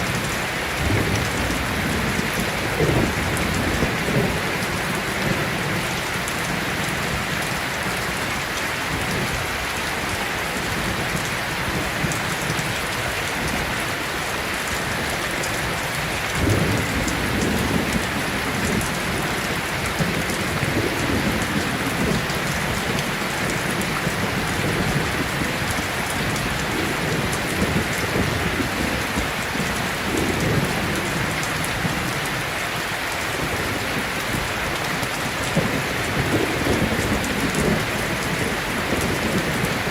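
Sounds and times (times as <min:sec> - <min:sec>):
thunder rumbling: 0:00.0 - 0:07.5, 0:14.7 - 0:32.2, 0:33.4 - 0:39.9
steady rain: 0:00.0 - 0:39.9.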